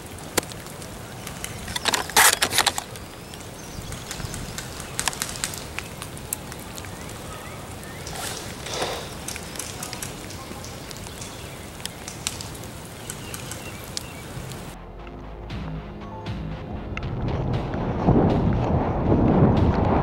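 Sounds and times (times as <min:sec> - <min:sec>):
rain pattering: 0:00.0 - 0:15.2, 0:16.9 - 0:20.0
raindrop clicks: 0:00.0 - 0:15.2.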